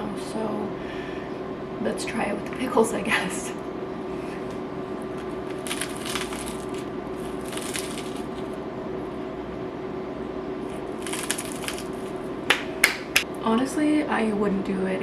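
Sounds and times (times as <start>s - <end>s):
steady hum: 0.0s - 15.0s
food crunching and squishing: 5.0s - 8.6s, 10.6s - 12.3s.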